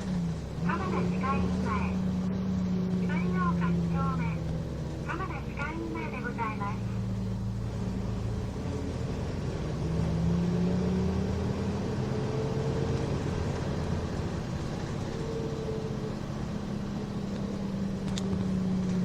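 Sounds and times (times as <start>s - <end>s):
bus engine drone: 0.0s - 19.0s.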